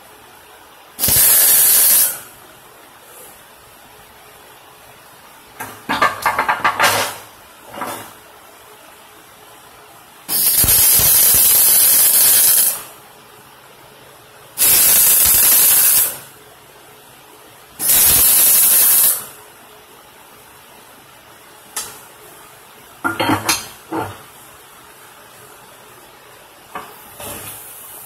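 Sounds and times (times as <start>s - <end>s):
welder arc buzzing: 1.0s - 2.2s, 10.3s - 12.9s, 14.6s - 16.2s, 17.8s - 19.4s.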